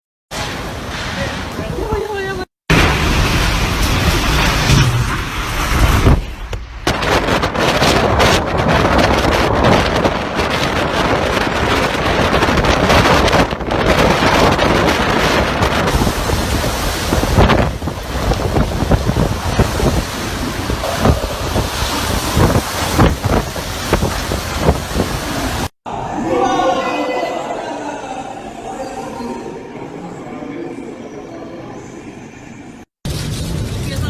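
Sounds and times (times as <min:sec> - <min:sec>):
gusting wind buffeting microphone: 0:05.4 - 0:25.7.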